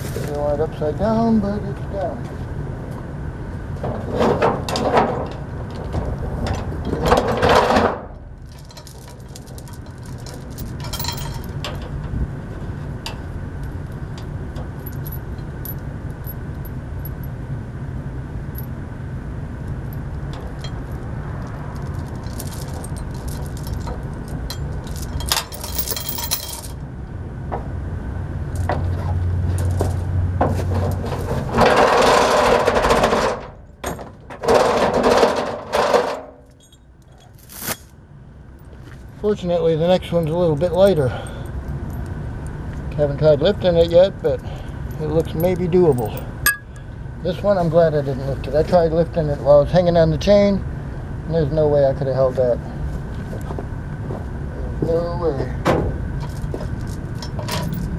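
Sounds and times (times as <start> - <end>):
steady low hum: 0.0 - 34.4, 35.1 - 57.9
metal clinking and rattling: 6.4 - 12.2, 13.0 - 17.3, 20.3 - 26.8, 56.2 - 57.9.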